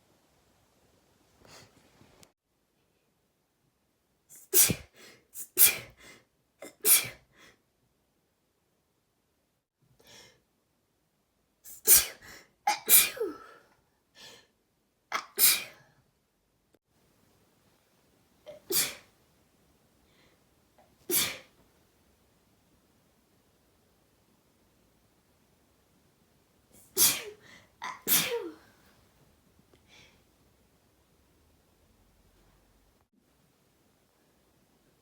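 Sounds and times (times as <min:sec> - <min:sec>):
person sneezing: 0:04.3 - 0:06.0, 0:06.6 - 0:07.2, 0:11.7 - 0:13.6, 0:15.2 - 0:15.8, 0:18.5 - 0:19.1, 0:21.1 - 0:21.5, 0:26.8 - 0:28.7.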